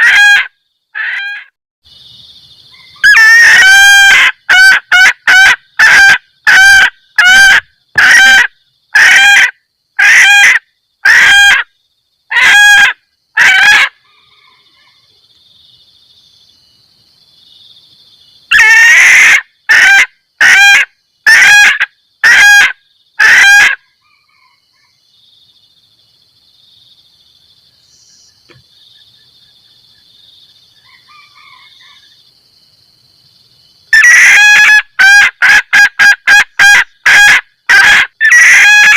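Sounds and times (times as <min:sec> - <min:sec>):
hen cackling calls: 0:00.0 - 0:01.6, 0:02.7 - 0:11.7, 0:12.3 - 0:15.0, 0:18.5 - 0:24.6, 0:33.9 - 0:38.9.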